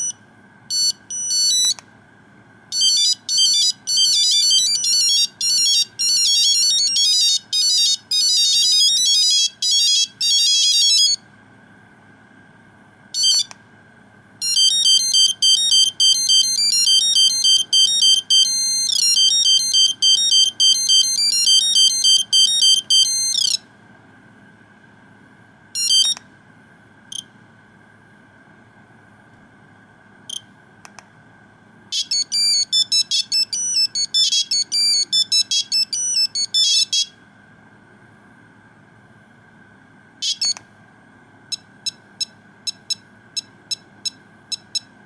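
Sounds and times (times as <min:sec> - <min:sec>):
short phone beeps: 0:00.0 - 0:01.8, 0:02.8 - 0:11.2, 0:25.8 - 0:26.2, 0:32.0 - 0:37.1, 0:40.2 - 0:40.6
monophonic phone ringtone melody: 0:00.7 - 0:01.8, 0:02.7 - 0:11.2, 0:14.4 - 0:23.6, 0:31.9 - 0:37.1.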